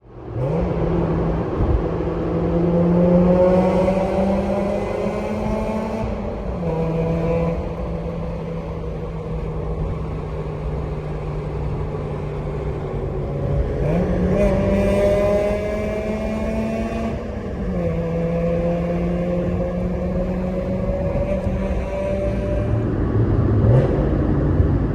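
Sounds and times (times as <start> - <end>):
rotary engine revving: 13.2 - 22.8.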